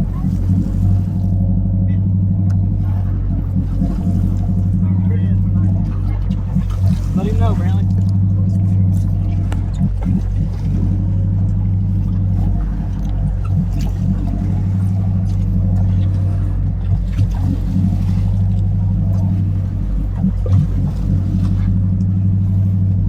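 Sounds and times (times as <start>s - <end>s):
boat engine droning: 0.0s - 23.0s.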